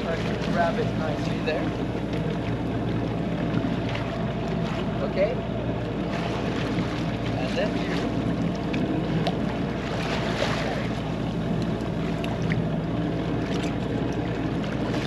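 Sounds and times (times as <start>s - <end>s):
low even hum: 0.0s - 15.0s
water rushing: 0.0s - 15.0s.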